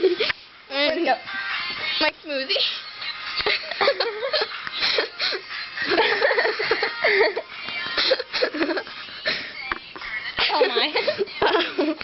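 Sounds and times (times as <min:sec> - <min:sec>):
girl giggling and laughing: 0:00.0 - 0:00.4, 0:03.2 - 0:12.0.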